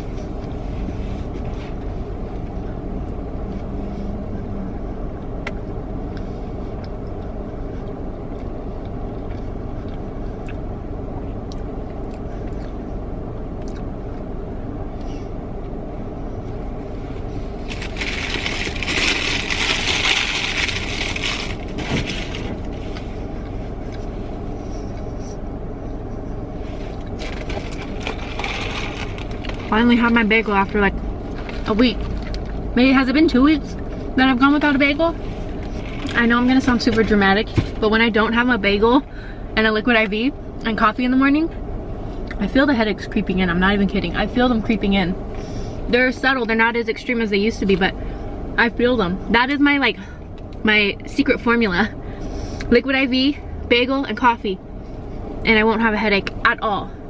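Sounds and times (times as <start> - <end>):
car engine idling: 0.0 - 57.0
crinkling and rustling: 17.6 - 24.2, 26.6 - 32.7, 35.1 - 37.8.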